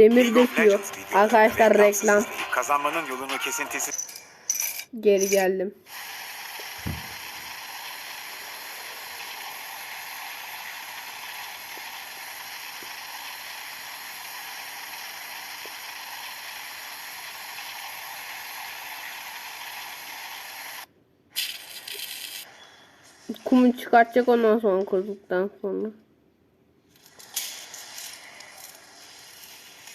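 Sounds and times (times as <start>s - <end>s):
steady hissing noise: 5.2s - 24.1s, 26.9s - 29.9s.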